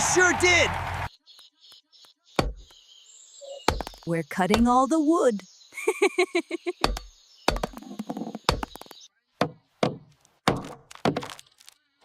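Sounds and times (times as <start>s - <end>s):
wood chopping knocks: 2.4s - 2.7s, 3.7s - 4.8s, 6.8s - 11.4s.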